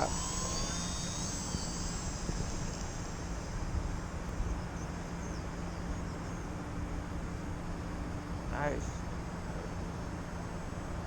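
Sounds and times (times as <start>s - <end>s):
wind buffeting microphone: 0.0s - 4.9s
model airplane motor whine: 0.0s - 6.8s.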